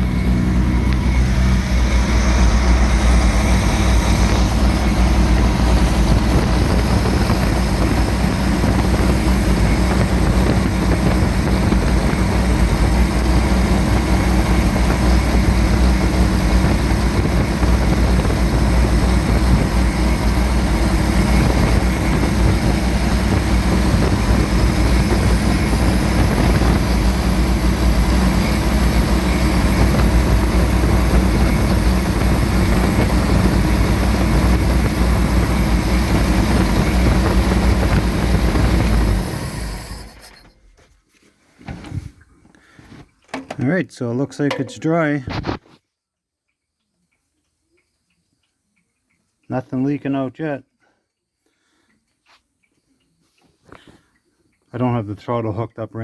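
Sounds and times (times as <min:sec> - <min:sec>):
engine idling: 0:00.0 - 0:40.5.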